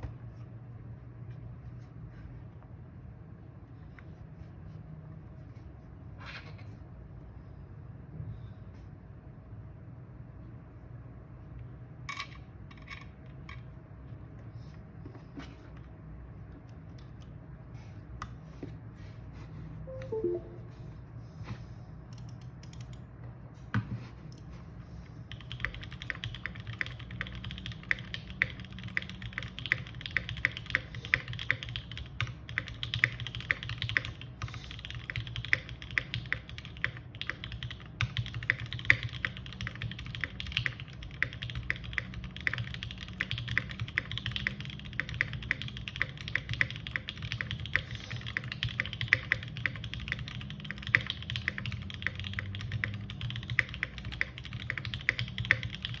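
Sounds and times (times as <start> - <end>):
typing on mechanical keyboard: 22.2 - 23.0, 25.3 - 56.0.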